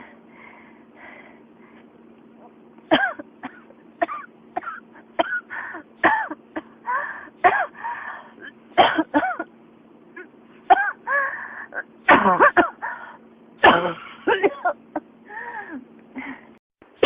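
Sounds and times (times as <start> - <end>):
person coughing: 2.9 - 6.8, 8.8 - 9.5, 12.1 - 12.8, 13.6 - 14.8.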